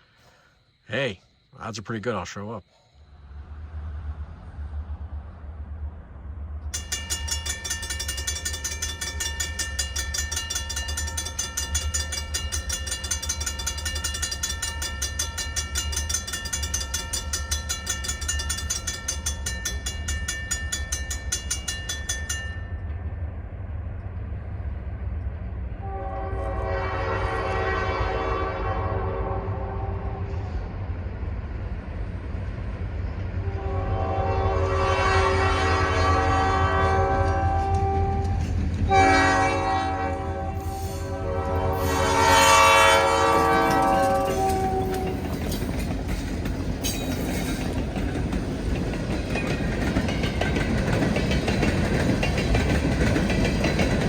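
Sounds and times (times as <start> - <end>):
locomotive bell ringing: 6.7 - 23.3, 37.6 - 54.0
locomotive horn chord: 25.8 - 30.5, 33.4 - 45.2.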